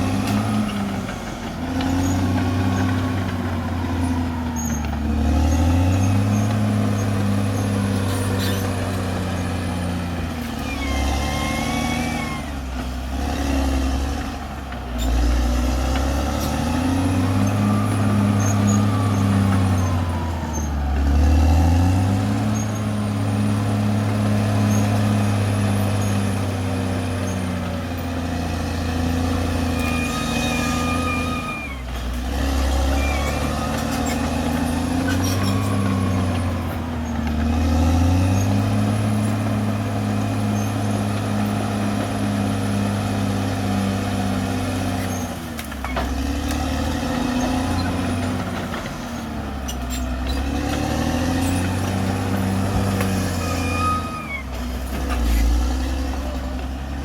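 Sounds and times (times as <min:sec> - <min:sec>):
bulldozer diesel engine working: 0:00.0 - 0:57.0
high squeal: 0:03.9 - 0:09.5, 0:10.4 - 0:12.6, 0:16.8 - 0:23.7, 0:29.5 - 0:31.9, 0:32.5 - 0:37.2, 0:49.6 - 0:55.6.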